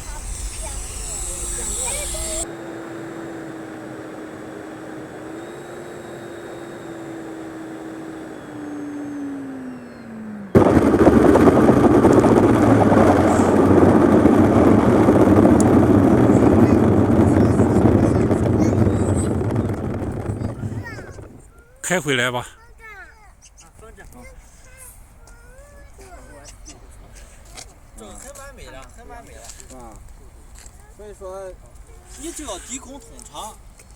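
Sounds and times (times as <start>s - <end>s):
model jet fan whine: 0.0s - 21.6s
loud rushing noise with low hum: 10.5s - 21.5s.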